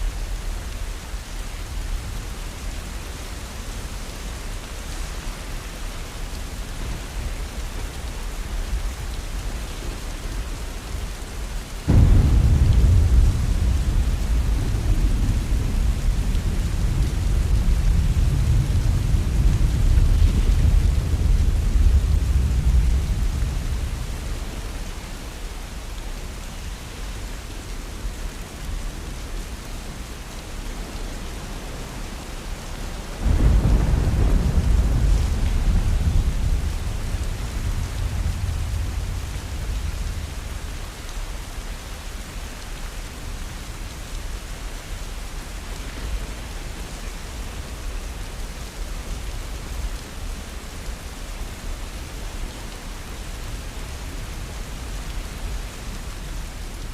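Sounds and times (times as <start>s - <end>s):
steady rain: 0.0s - 56.9s
thunder rumbling: 11.8s - 24.7s, 33.2s - 40.8s
loud thunder clap: 11.9s - 23.7s, 33.2s - 40.3s.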